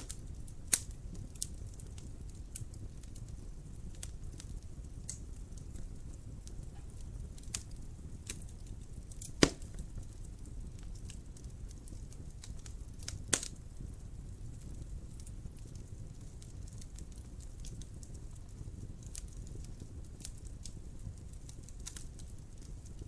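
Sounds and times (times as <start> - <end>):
fire rumbling: 0.0 - 23.0
small fire crackles: 0.0 - 23.0
loud wood pops: 9.3 - 9.7.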